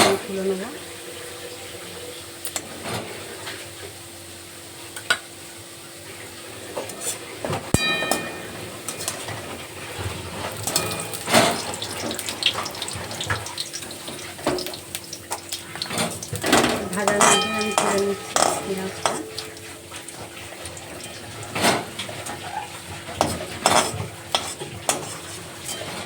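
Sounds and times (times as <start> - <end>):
ringing metal clink: 7.8 - 9.2, 10.7 - 11.5, 17.1 - 19.5
onions sizzling in oil: 10.2 - 21.5
metal spoon scraping a pan: 15.7 - 19.8, 21.0 - 26.0.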